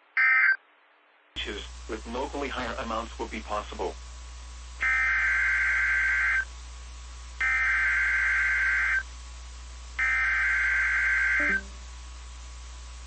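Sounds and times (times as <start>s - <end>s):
two-tone digital data warble: 11.1s - 11.8s.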